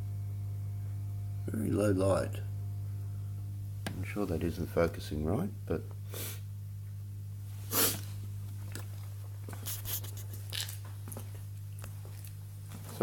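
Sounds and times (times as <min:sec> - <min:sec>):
person sniffing: 0:06.1 - 0:06.5, 0:07.6 - 0:08.2, 0:09.6 - 0:10.3.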